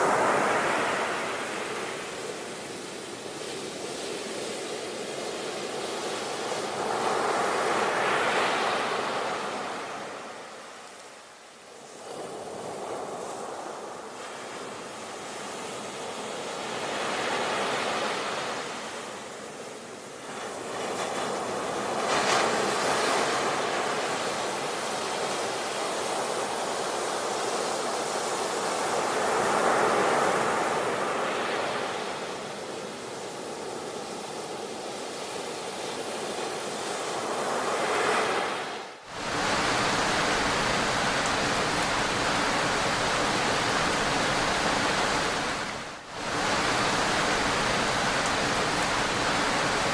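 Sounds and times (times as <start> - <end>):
steady rush of water: 0.0 - 49.9
ocean waves washing: 11.9 - 49.9.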